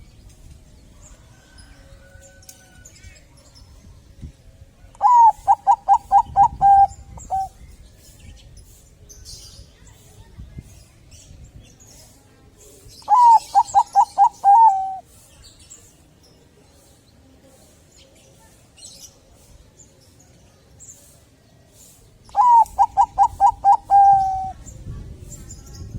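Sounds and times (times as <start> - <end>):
dove cooing: 5.0 - 7.6, 13.1 - 15.0, 22.3 - 24.6.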